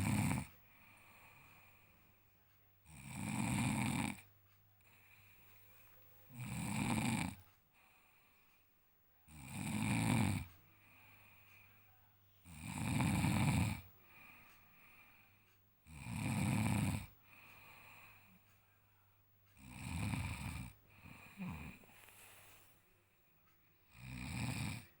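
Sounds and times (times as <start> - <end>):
man snoring: 0.0 - 0.5, 2.8 - 4.3, 6.3 - 7.4, 9.3 - 10.5, 12.4 - 13.9, 15.8 - 17.2, 19.6 - 21.9, 23.9 - 25.0
quiet breathing: 0.0 - 25.0.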